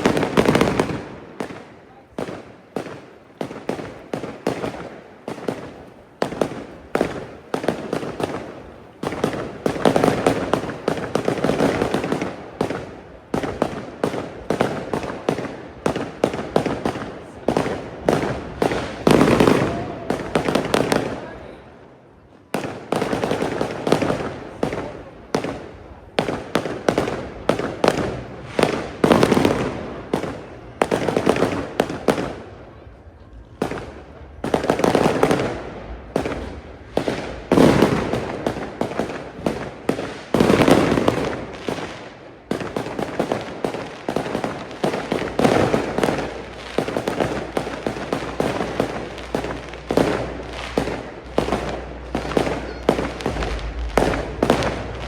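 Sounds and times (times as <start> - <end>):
fireworks bangs and crackles: 0.0 - 55.0.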